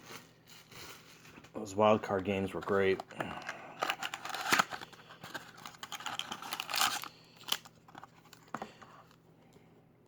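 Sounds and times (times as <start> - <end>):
plastic wrapping tearing and crinkling: 0.0 - 1.7, 3.8 - 7.7.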